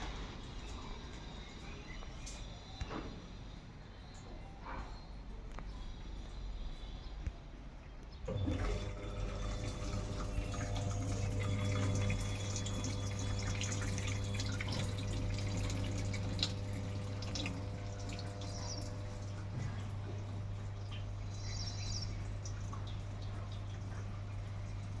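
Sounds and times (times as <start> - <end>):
washing machine hum: 0.0 - 4.6, 8.2 - 25.0
water running into tub: 8.3 - 25.0
small ticks and splashes: 9.8 - 25.0.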